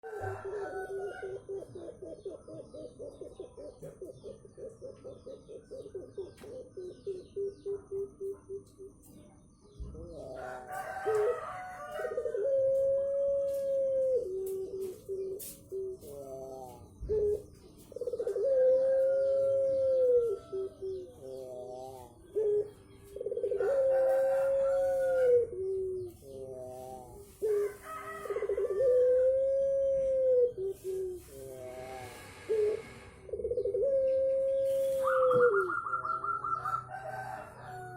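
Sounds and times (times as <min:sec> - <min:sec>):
dove cooing: 0:00.0 - 0:09.1, 0:09.9 - 0:37.9
small birds chirping: 0:00.0 - 0:12.2, 0:14.3 - 0:18.6, 0:19.3 - 0:28.5.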